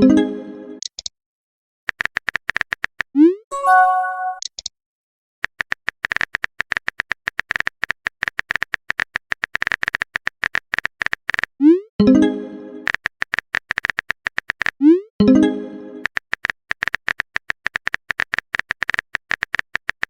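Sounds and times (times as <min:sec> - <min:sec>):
phone keyboard typing clicks: 0:01.9 - 0:03.1, 0:05.4 - 0:11.5, 0:12.8 - 0:14.8, 0:16.0 - 0:20.0
message sent swoop: 0:03.5 - 0:04.4
short chime: 0:03.5 - 0:04.4.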